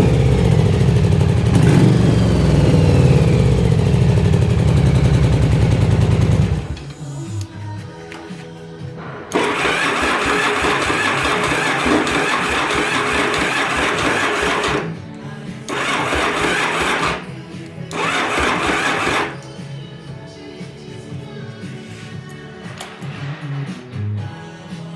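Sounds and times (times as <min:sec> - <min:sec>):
electric starter cranking engine: 0:00.0 - 0:07.4, 0:09.3 - 0:15.1, 0:15.7 - 0:19.4
music: 0:00.0 - 0:24.9.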